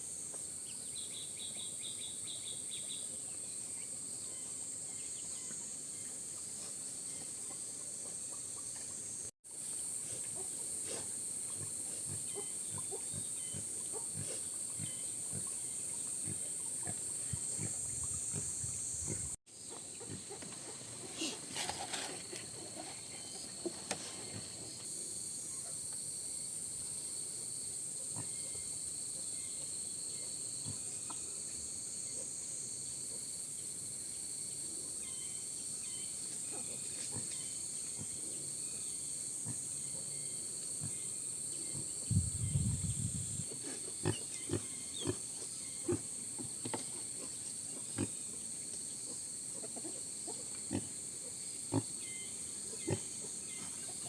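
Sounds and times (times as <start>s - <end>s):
insects droning: 0.0s - 54.0s
small knocks and rustles: 20.1s - 24.6s.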